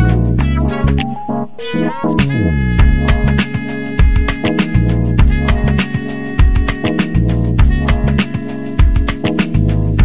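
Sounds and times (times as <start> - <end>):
bass notes: 0.0 - 5.9, 7.0 - 8.3, 9.4 - 10.0.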